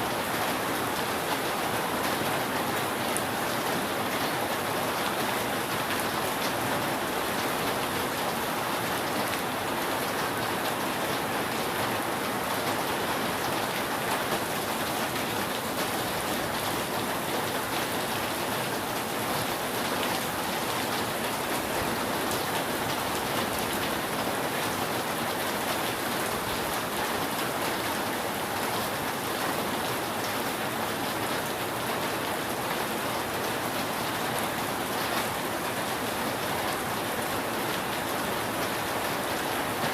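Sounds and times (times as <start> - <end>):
heavy rain on a roof: 0.0 - 39.9.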